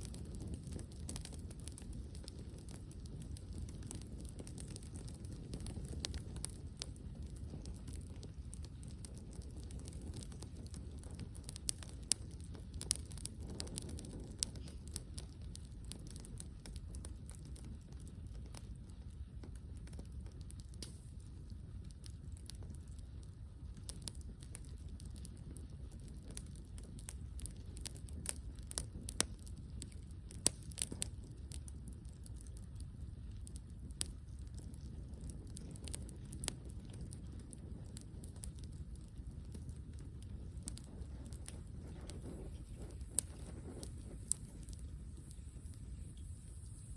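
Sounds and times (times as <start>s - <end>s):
campfire crackling: 0.0s - 46.9s
low steady rumble: 0.0s - 46.9s
sharp fire pops: 0.0s - 46.9s.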